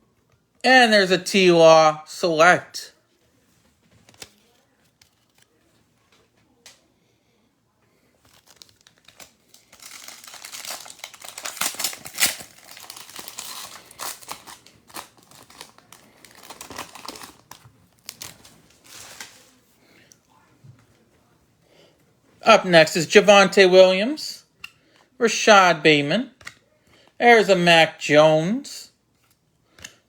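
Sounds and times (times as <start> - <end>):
foil wrapper crinkling and tearing: 8.2 - 19.6.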